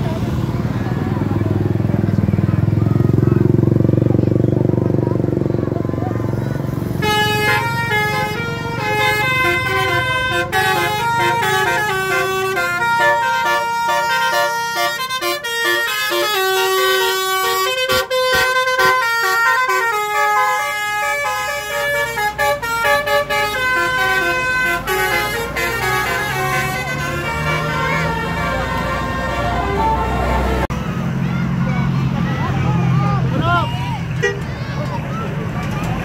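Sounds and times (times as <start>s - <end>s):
bus musical air horn tune: 7.0s - 30.7s.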